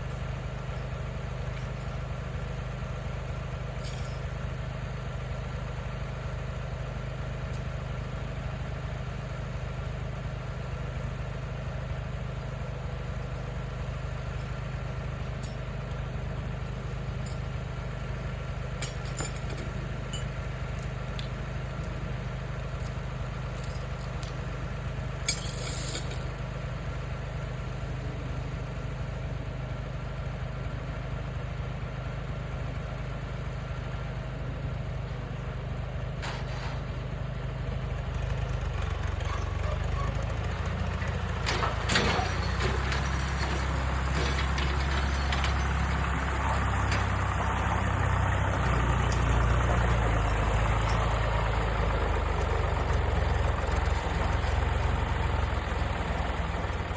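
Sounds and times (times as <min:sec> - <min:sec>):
engine running steadily: 0:00.0 - 0:56.9
loud metallic clatter: 0:41.0 - 0:49.6.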